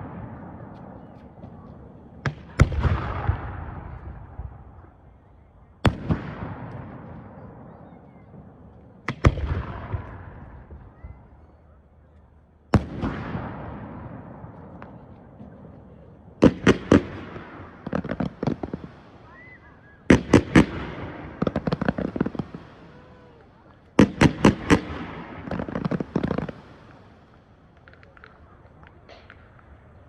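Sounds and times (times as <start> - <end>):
crackling firework pops: 9.1 - 11.1, 23.3 - 30.0.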